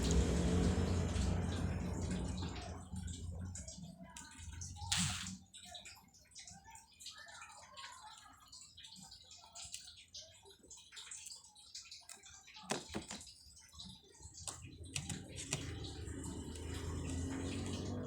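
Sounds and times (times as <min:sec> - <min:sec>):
low hum: 0:00.0 - 0:03.7
eating clicks and taps: 0:12.1 - 0:13.3, 0:14.4 - 0:18.0.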